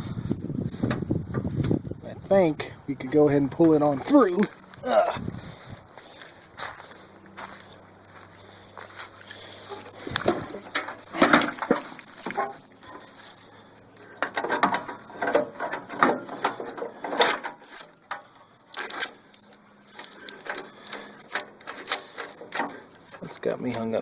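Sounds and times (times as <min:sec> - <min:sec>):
wiring scraping against metal frame: 0:09.3 - 0:24.0.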